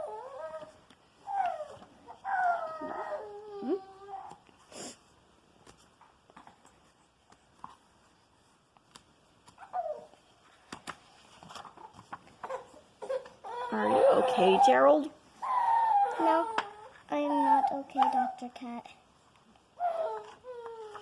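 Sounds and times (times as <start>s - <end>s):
child whimpering cry: 1.3s - 4.3s, 12.4s - 18.2s, 19.8s - 21.0s.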